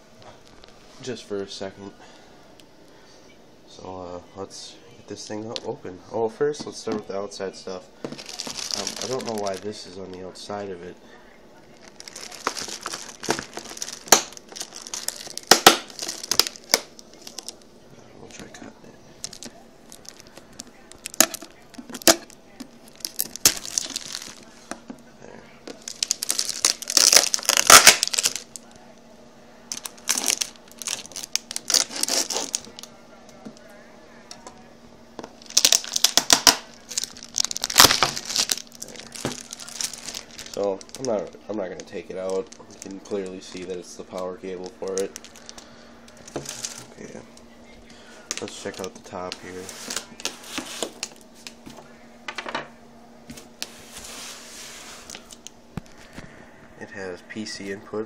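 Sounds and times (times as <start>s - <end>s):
packaging crinkling and rustling: 8.1s - 9.9s, 11.7s - 18.6s, 19.2s - 24.9s, 25.6s - 28.9s, 29.7s - 33.6s, 35.2s - 52.5s, 53.3s - 56.4s
cardboard rubbing and rustling: 49.5s - 51.0s, 53.3s - 55.3s.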